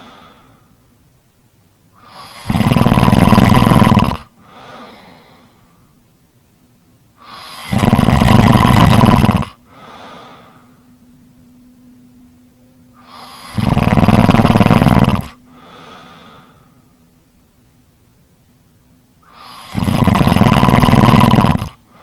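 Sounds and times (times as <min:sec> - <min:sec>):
quiet breath: 0:00.0 - 0:00.9, 0:01.9 - 0:02.4, 0:04.3 - 0:06.1, 0:07.2 - 0:07.7, 0:09.5 - 0:11.9, 0:12.9 - 0:13.7, 0:15.3 - 0:17.2, 0:19.2 - 0:19.9, 0:21.8 - 0:22.0
loud snores: 0:02.0 - 0:05.2, 0:07.2 - 0:10.5, 0:13.0 - 0:16.5, 0:19.2 - 0:21.8.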